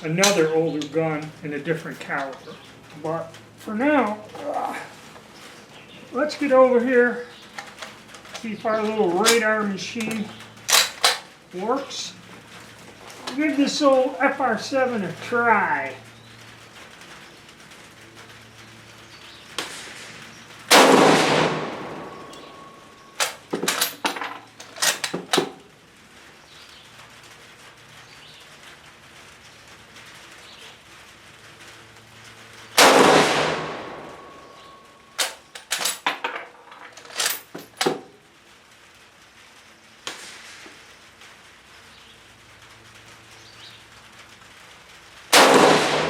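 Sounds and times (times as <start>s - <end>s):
rifle bolt clicking: 10.0s - 11.2s
rifle shots: 20.7s - 24.0s, 32.8s - 35.4s, 45.3s - 46.0s.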